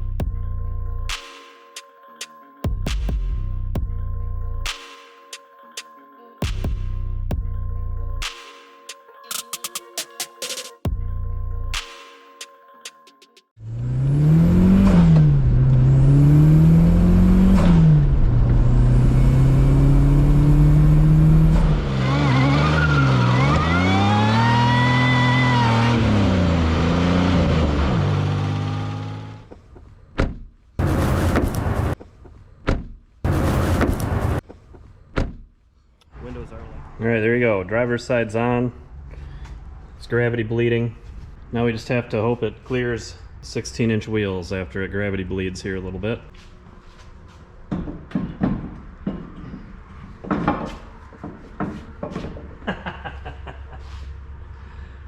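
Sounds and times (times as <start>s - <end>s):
car engine running: 13.6s - 29.5s, 30.8s - 32.0s.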